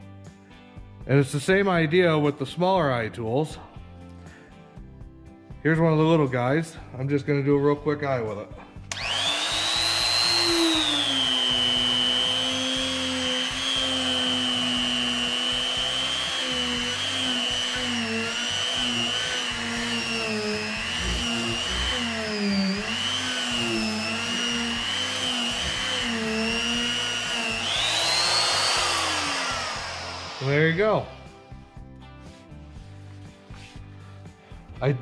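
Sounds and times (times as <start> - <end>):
die grinder whining into wood: 8.9 - 31.5.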